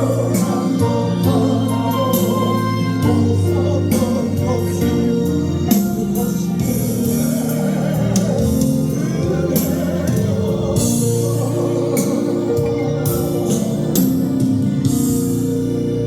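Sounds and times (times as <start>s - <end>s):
band playing worship music: 0.0s - 16.0s
singing: 0.0s - 16.0s.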